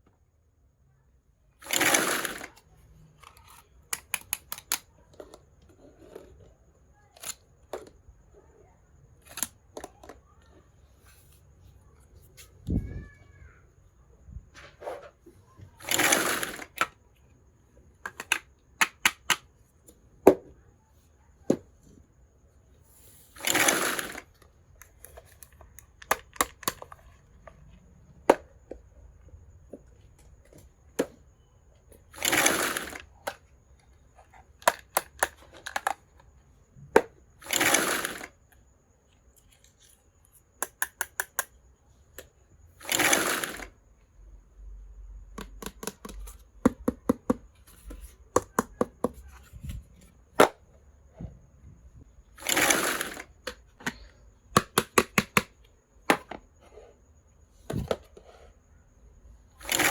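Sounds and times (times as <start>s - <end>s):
small toy pieces clicking: 1.6s - 2.6s, 3.2s - 4.9s, 15.8s - 17.0s, 23.4s - 24.4s, 32.1s - 33.4s, 37.4s - 38.4s, 40.6s - 41.6s, 42.8s - 43.7s, 52.4s - 54.0s.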